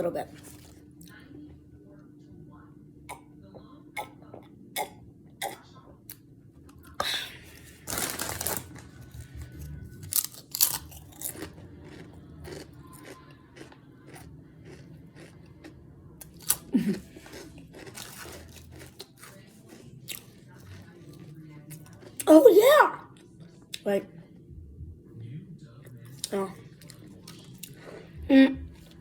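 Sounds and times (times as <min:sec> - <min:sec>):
person chewing sandwich: 0:06.7 - 0:22.3, 0:26.1 - 0:28.2.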